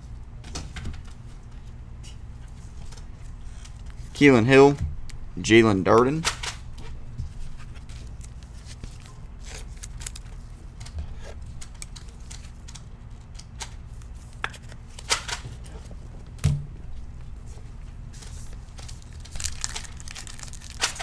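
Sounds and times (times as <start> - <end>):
trading cards flicked through: 18.9 - 21.0.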